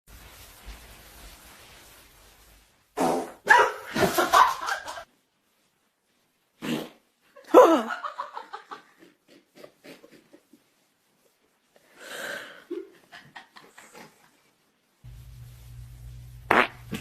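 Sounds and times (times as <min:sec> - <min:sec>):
fart: 0:03.0 - 0:03.4, 0:06.6 - 0:07.1, 0:16.4 - 0:17.0.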